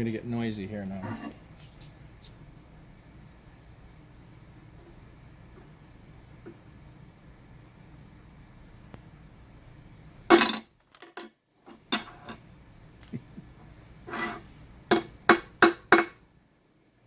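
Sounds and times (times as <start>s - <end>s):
hammer striking metal: 14.9s - 16.2s.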